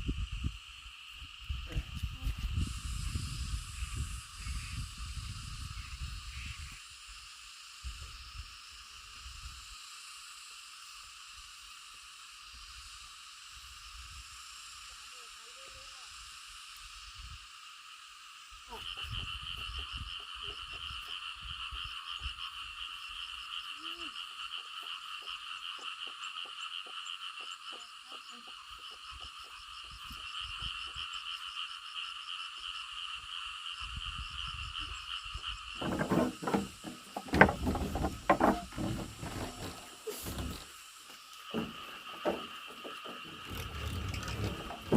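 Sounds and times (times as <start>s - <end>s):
frog chorus trilling: 18.0s - 44.9s
loud knocks: 35.8s - 40.6s
rustling: 35.8s - 40.8s.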